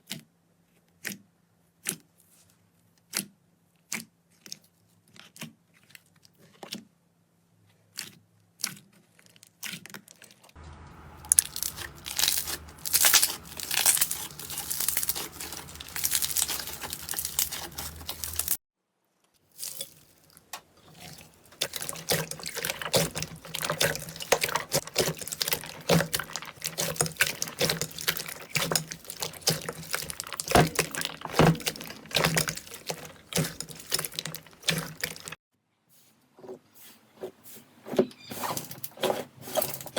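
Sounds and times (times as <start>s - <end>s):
slime clicking and crackling: 11.1s - 18.6s, 19.6s - 35.4s.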